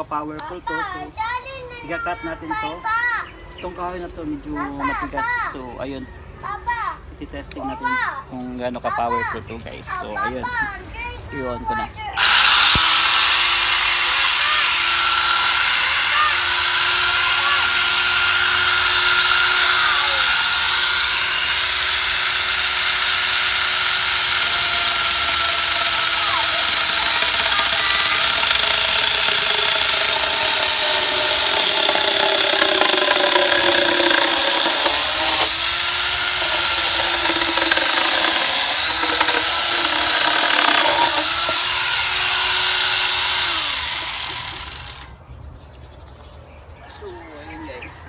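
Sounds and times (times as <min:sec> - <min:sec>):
chainsaw cutting wood: 0:12.2 - 0:45.1.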